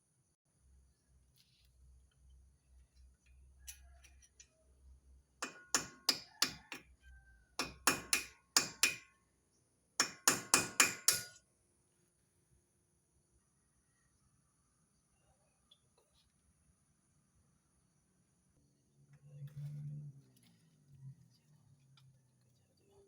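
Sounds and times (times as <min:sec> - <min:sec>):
hammer striking metal: 0:05.4 - 0:06.8, 0:07.6 - 0:09.1, 0:10.0 - 0:11.4.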